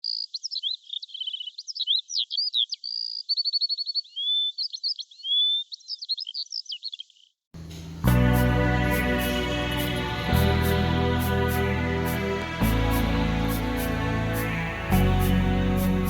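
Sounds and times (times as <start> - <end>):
songbird singing: 0.0 - 16.0
soft music: 7.6 - 16.0.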